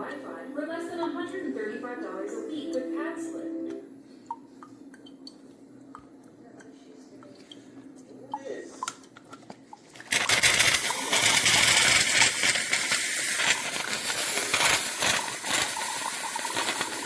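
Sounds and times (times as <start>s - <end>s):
pumped hot water hissing: 10.0s - 17.0s.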